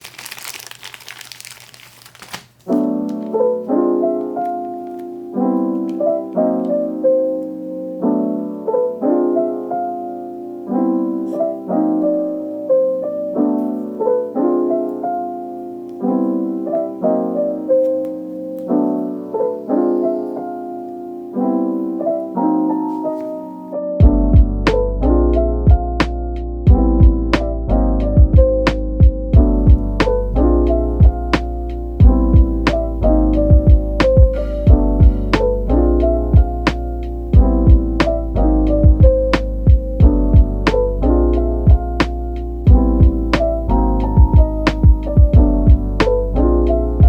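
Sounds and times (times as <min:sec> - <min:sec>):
gentle piano chords: 0:00.1 - 0:47.0
deep bass and beat: 0:24.0 - 0:24.8, 0:25.7 - 0:46.8.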